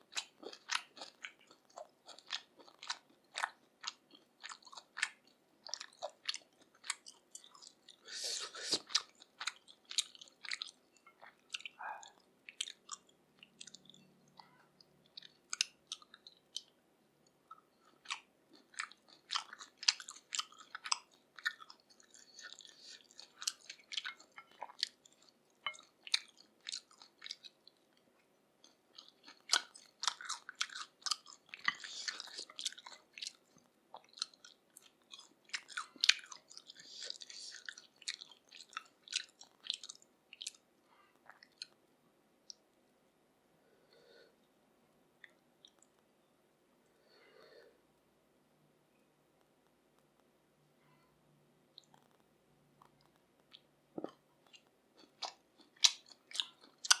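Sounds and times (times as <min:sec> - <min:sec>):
chewing mouth clicks and smacks: 0:00.1 - 0:08.0, 0:08.7 - 0:16.8, 0:17.5 - 0:28.0, 0:28.6 - 0:40.6, 0:41.2 - 0:41.8, 0:45.2 - 0:46.0, 0:51.7 - 0:52.2, 0:52.8 - 0:57.0.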